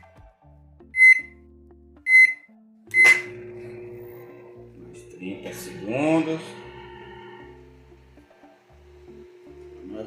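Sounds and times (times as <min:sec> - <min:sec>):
microwave keypad beeping: 0:01.0 - 0:01.4, 0:02.1 - 0:03.4
microwave oven humming: 0:02.9 - 0:10.0.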